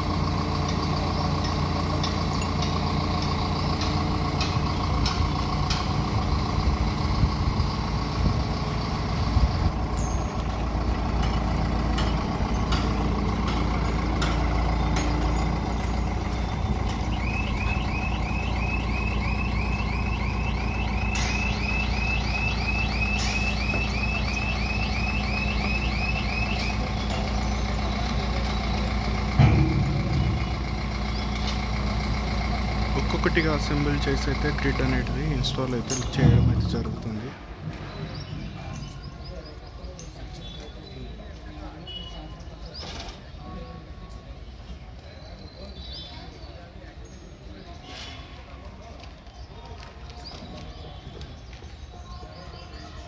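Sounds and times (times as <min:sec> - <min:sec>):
crane diesel engine droning: 0:00.0 - 0:41.1
short metallic knocks: 0:29.1 - 0:32.2, 0:35.8 - 0:37.2.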